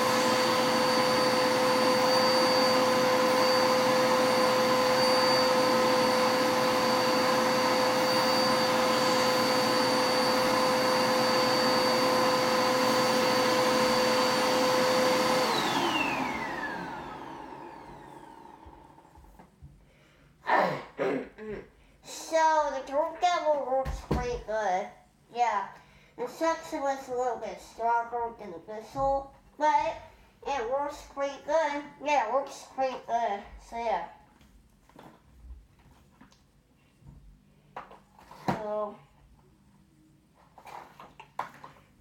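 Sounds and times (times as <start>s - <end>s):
vacuum motor winding down: 0.0s - 19.2s
vacuum cleaner running: 0.0s - 19.8s.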